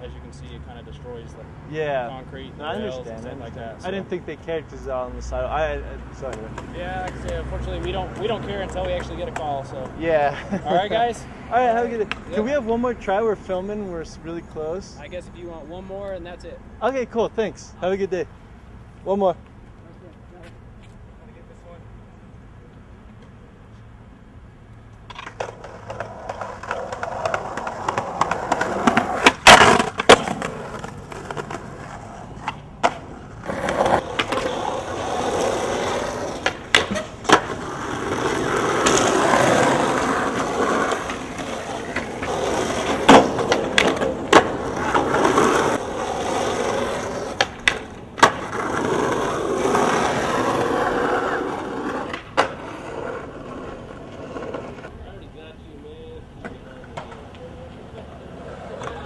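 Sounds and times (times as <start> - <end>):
skateboard wheels rolling on concrete: 0.0 - 59.0
skateboard clacking on ground: 6.2 - 10.0, 25.0 - 54.9, 56.4 - 59.0.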